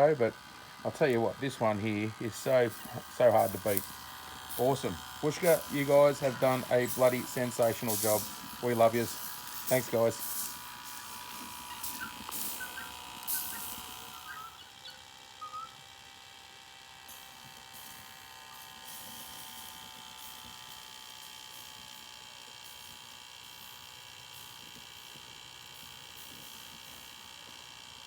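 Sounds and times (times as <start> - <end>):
faint electric hum: 0.0 - 28.0.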